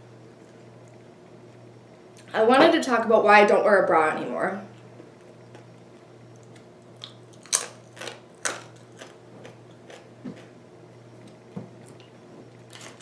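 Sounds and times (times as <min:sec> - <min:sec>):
chewing crunchy food: 0:04.8 - 0:10.6, 0:11.2 - 0:13.0.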